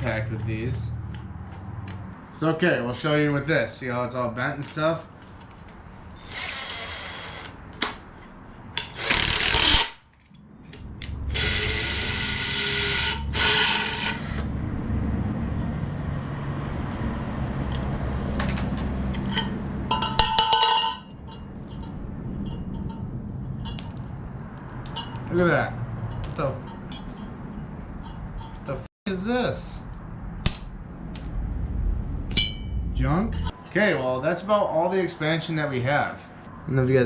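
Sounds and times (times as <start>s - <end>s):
impact wrench bursts: 8.8s - 10.0s, 11.3s - 14.5s
steady low hum: 10.3s - 33.8s.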